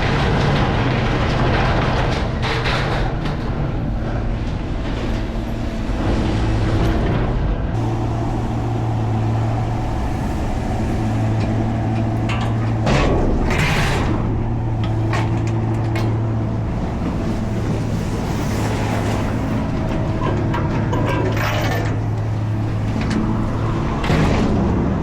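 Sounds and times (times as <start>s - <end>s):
road noise: 0.0s - 25.0s
truck engine drone: 0.0s - 25.0s
whoosh: 7.7s - 14.8s.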